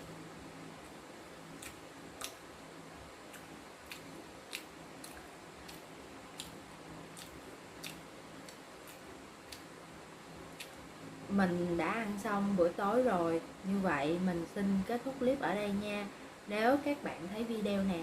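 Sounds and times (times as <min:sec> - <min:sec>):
chewing crispy fried fish: 0:01.5 - 0:02.4, 0:03.3 - 0:09.7.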